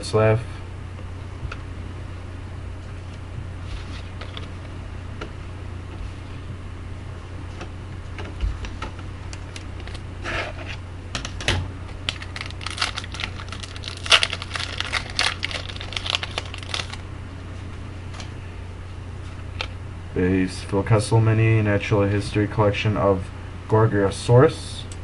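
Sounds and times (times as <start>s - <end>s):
steady low hum: 0.0s - 25.0s
cards crinkling and tearing: 9.3s - 10.1s, 12.0s - 17.0s.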